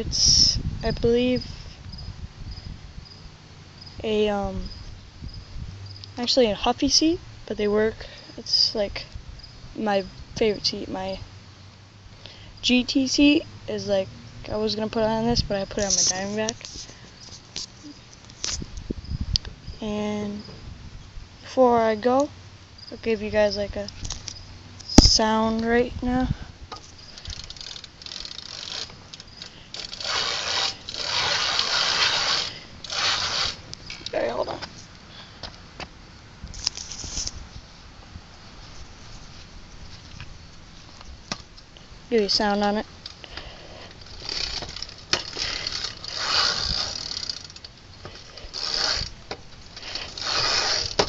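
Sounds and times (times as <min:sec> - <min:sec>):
bicycle hub ratcheting: 0:14.7 - 0:18.6, 0:26.7 - 0:34.2, 0:43.0 - 0:51.0.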